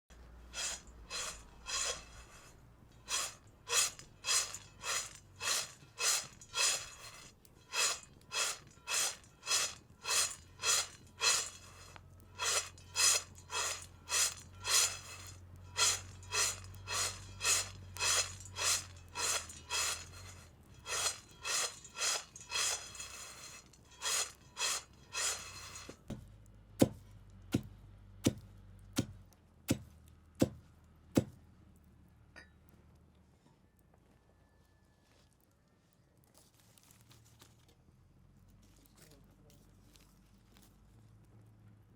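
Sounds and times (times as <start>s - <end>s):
coffee beans scraped in roasting pan: 0.1s - 26.1s.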